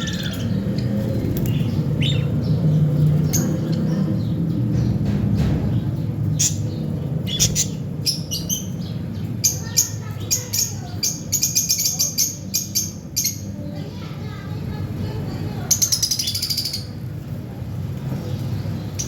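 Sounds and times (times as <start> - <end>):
budgerigars chirping: 0.0 - 4.1, 6.4 - 9.8
low background rumble: 0.0 - 19.0.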